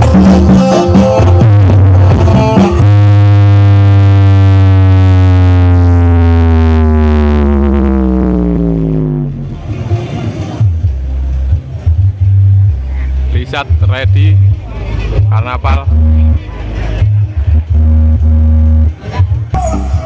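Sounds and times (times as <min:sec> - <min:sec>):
loud electronic music: 0:00.0 - 0:10.0, 0:15.1 - 0:20.0
bass synthesizer tone gliding down: 0:01.4 - 0:20.0.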